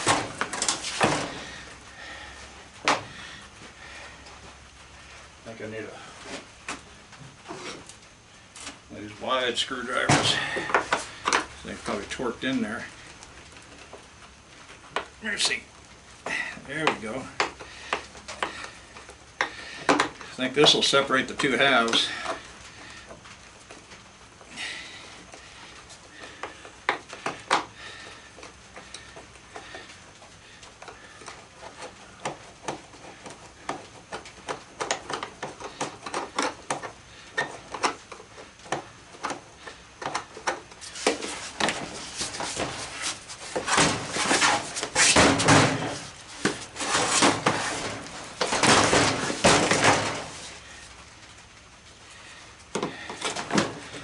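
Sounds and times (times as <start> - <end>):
plastic scraping and rattling: 30.8 - 51.4.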